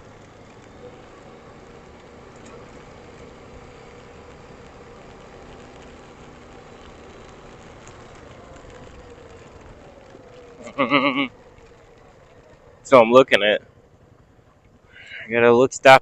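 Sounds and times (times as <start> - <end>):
atv engine running: 0.0 - 16.0
faint ticks: 0.1 - 12.8.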